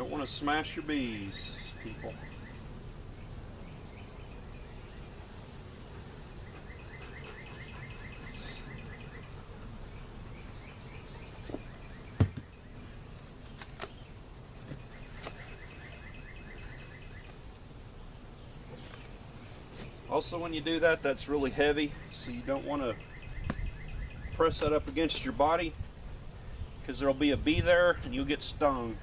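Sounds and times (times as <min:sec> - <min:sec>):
low outdoor background: 0:00.0 - 0:29.0
bird singing a fast trill: 0:01.3 - 0:02.6, 0:06.4 - 0:12.8, 0:14.8 - 0:17.3, 0:21.4 - 0:24.6
knocks on wooden hive boxes: 0:11.4 - 0:12.5.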